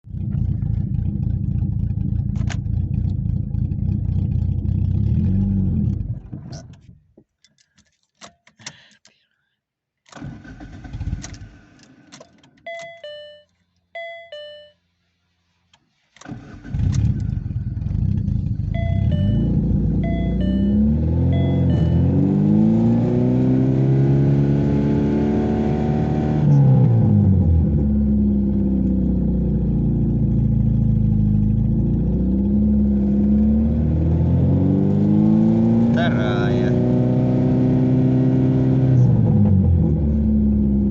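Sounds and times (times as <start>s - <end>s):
car engine starting and running: 0.0s - 7.2s, 10.1s - 14.7s, 15.4s - 40.9s
two-tone electronic beeps: 12.7s - 14.8s, 18.7s - 22.4s
drivetrain hum changing pitch: 18.4s - 23.4s.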